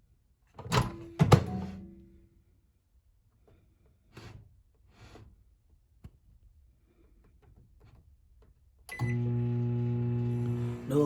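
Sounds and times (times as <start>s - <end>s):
microwave humming: 8.9s - 11.0s.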